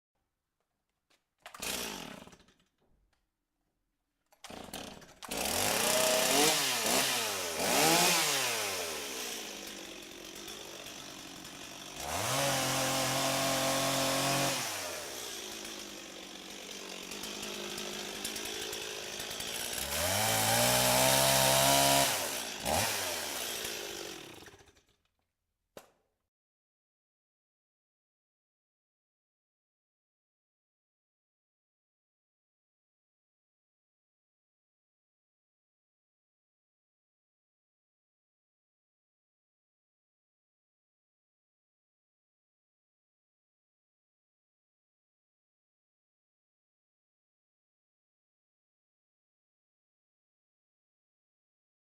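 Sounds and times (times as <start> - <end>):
chainsaw engine revving: 1.4 - 2.6, 4.4 - 24.9
small click: 25.8 - 26.0.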